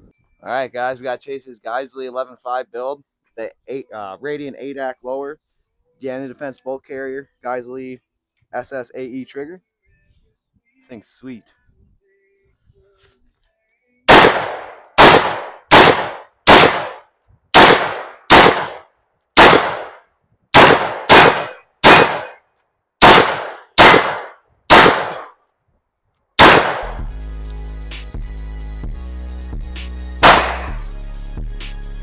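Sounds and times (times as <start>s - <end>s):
rifle shots: 14.1s - 18.8s, 19.4s - 22.4s, 23.0s - 25.3s, 26.4s - 27.0s, 30.2s - 30.8s
heavy bass music: 26.4s - 32.0s.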